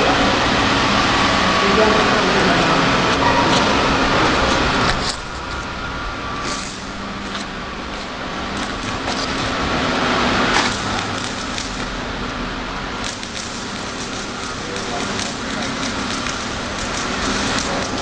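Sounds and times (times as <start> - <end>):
machine hum: 0.0 - 18.0.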